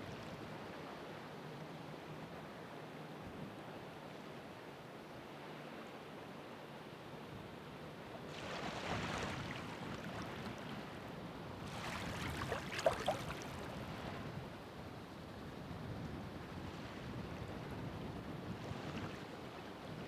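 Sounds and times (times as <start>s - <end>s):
ocean waves breaking on shore: 7.6s - 20.0s.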